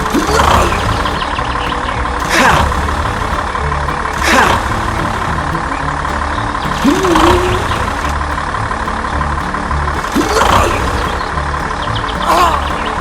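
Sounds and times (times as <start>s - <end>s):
low engine running: 0.0s - 13.0s.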